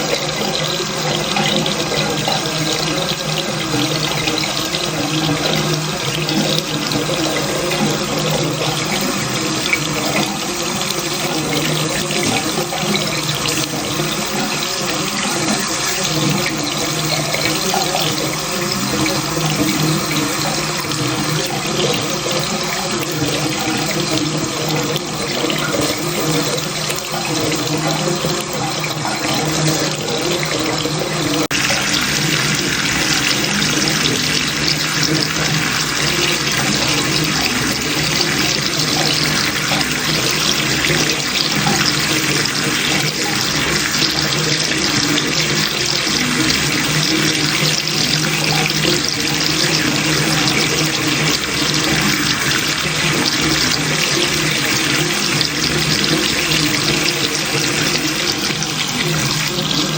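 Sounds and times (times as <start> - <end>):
tap water running into sink: 0.0 - 59.9.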